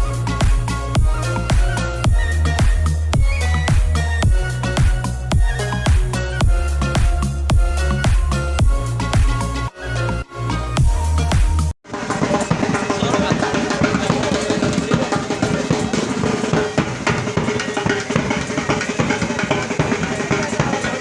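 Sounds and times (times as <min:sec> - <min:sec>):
music with rapid drumming: 0:00.0 - 0:21.0.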